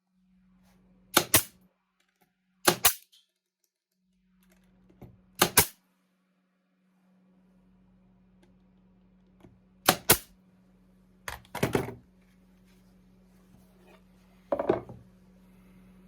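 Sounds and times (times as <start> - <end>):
steady low hum: 4.6 - 16.0
wooden parts and tools knocking: 14.5 - 15.0.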